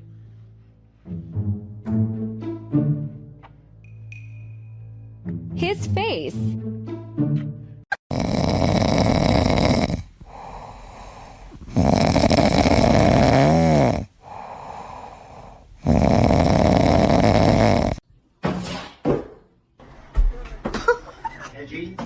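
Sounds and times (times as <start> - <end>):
heavy snoring: 8.0 - 18.0
quiet breathing: 9.8 - 15.9.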